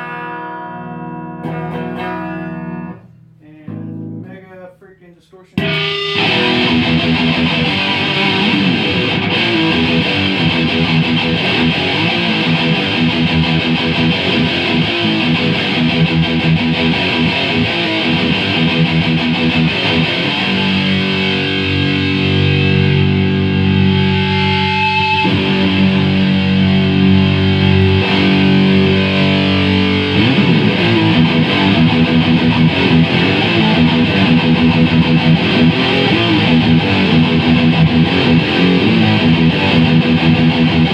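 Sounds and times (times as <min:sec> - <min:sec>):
distorted electric guitar riffs: 0:00.0 - 0:04.6, 0:05.5 - 0:40.9.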